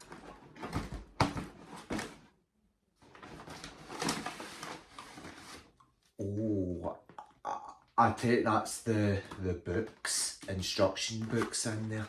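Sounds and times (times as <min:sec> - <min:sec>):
cardboard rustling and scraping: 0:00.0 - 0:02.3, 0:03.0 - 0:05.8, 0:09.0 - 0:12.0.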